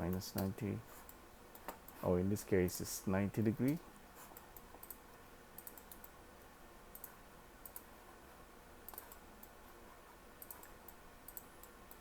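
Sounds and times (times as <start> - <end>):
mouse and keyboard clicks: 5.6 - 6.2, 8.9 - 9.6.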